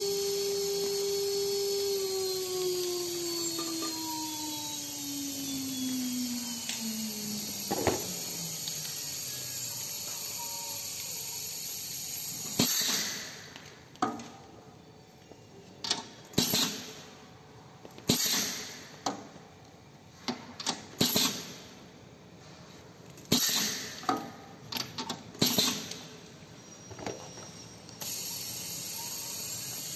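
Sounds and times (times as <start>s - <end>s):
engraving machine running: 0.0s - 12.6s.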